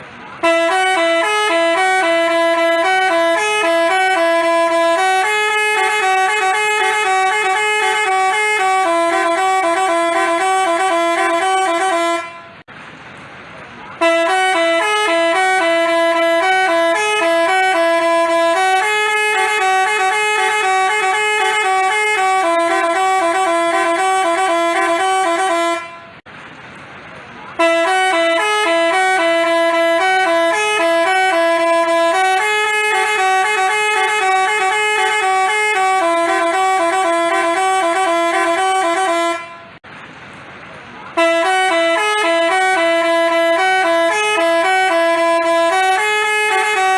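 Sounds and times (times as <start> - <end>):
bus horn playing a tune: 0.0 - 12.7, 13.9 - 26.3, 27.5 - 39.8, 41.1 - 46.9.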